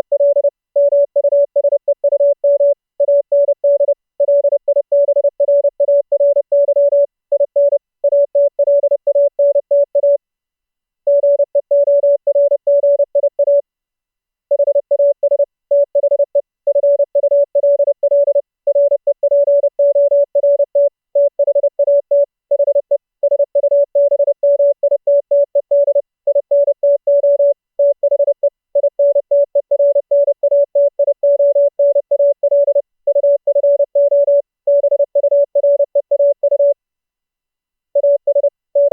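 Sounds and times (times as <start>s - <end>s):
morse code tone: 14.5s - 36.8s, 38.0s - 38.9s.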